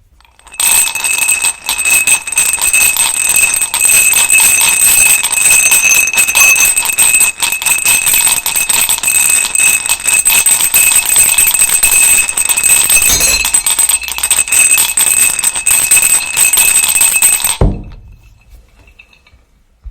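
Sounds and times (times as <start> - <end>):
high ringing tones: 0.4 - 19.3
metallic jingling rattle: 5.2 - 19.4.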